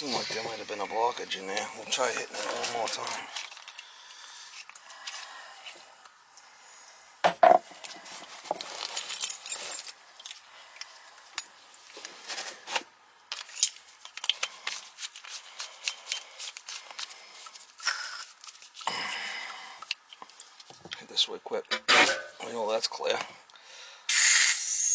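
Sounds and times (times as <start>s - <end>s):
clicks and scrapes of handling: 1.4s - 3.9s, 11.4s - 18.8s.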